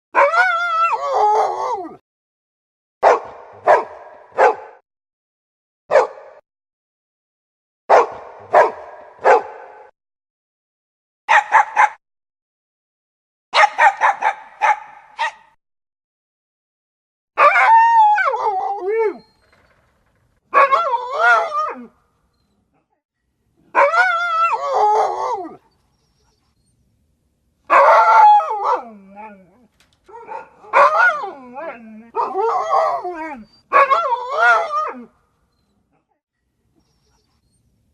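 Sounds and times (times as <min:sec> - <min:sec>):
dog barking: 0:03.0 - 0:04.8, 0:05.9 - 0:06.4, 0:07.9 - 0:09.9, 0:11.3 - 0:12.0, 0:13.6 - 0:15.6, 0:20.5 - 0:21.6, 0:23.7 - 0:24.2, 0:27.7 - 0:28.9, 0:30.1 - 0:31.3, 0:32.1 - 0:32.5, 0:33.7 - 0:34.7
dog crying: 0:20.6 - 0:21.9, 0:23.8 - 0:25.8, 0:27.7 - 0:35.1.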